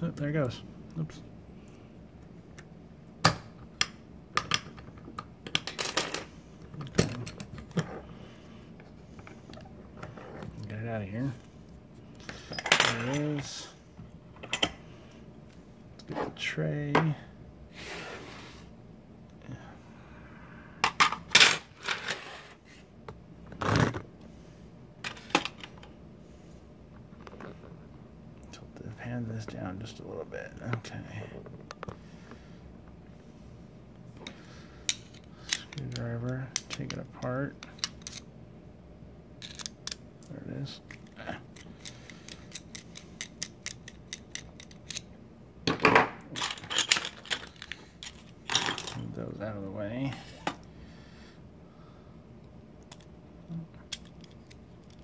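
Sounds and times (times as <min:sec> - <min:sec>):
metal parts clattering: 0:39.4 - 0:39.7, 0:46.3 - 0:49.1
screwdriver clicking and scraping: 0:41.6 - 0:45.0.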